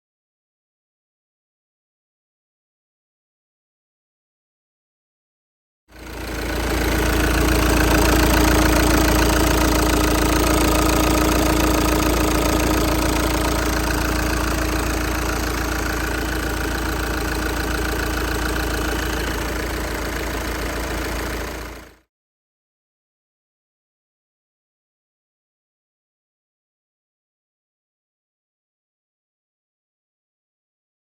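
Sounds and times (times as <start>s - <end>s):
diesel engine running steadily: 6.0s - 22.0s.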